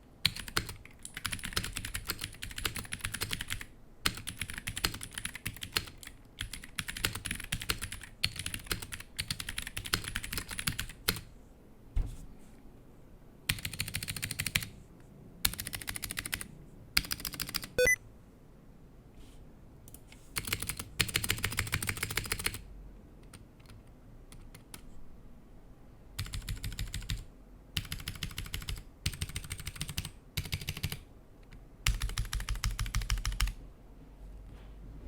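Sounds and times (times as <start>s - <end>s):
fast typing on clicky keyboard: 0.2s - 11.3s, 13.5s - 14.7s, 15.4s - 18.0s, 19.9s - 22.6s, 23.2s - 24.8s, 26.2s - 31.1s, 31.8s - 33.6s.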